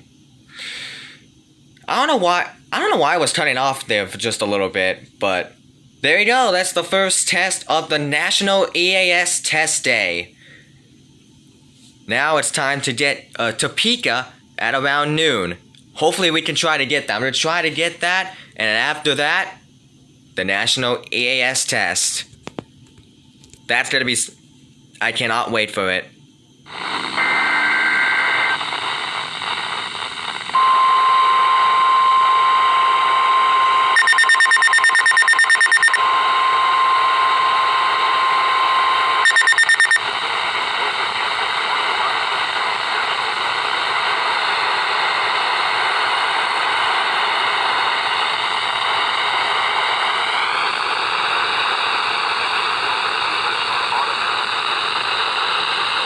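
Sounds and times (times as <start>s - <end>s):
steady attention tone: 26.6s - 43.4s
radio hiss: 26.6s - 56.0s
rapid electronic alarm beeping: 26.7s - 40.1s
digital header tones: 33.9s - 36.0s, 39.2s - 40.0s.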